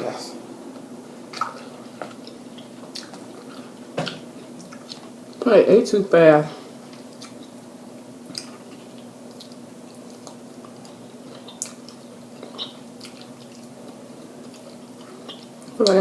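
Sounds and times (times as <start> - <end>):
steady low hum: 0.0 - 16.0
chewing: 1.3 - 5.4, 6.9 - 7.6, 8.2 - 16.0.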